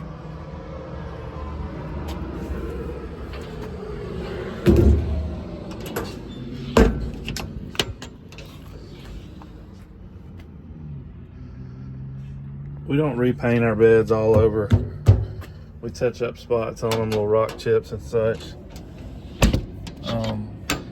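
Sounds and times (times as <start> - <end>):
latch clicks and knocks: 4.4 - 8.8, 14.2 - 15.8, 16.8 - 17.8, 18.4 - 20.9
heavy metal bangs: 14.2 - 15.8.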